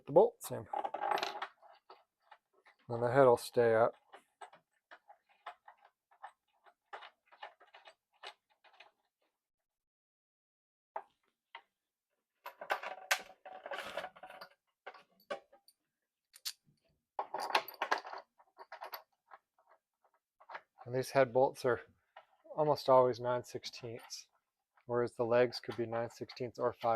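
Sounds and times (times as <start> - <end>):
metal bolts clinking and scraping: 0.7 - 2.9, 12.4 - 15.7, 17.2 - 19.8.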